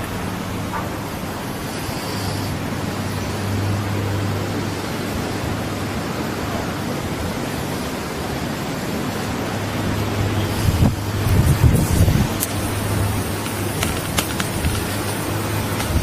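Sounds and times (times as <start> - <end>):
loud rushing noise: 0.0 - 16.0.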